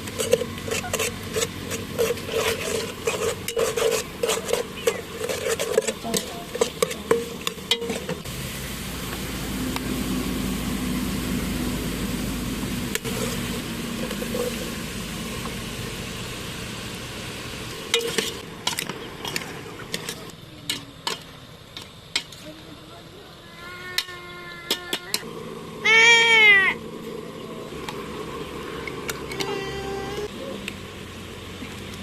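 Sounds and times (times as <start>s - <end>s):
utensil scraping a pan: 0.0s - 8.3s, 13.0s - 14.8s
food sizzling in a pan: 0.0s - 22.5s.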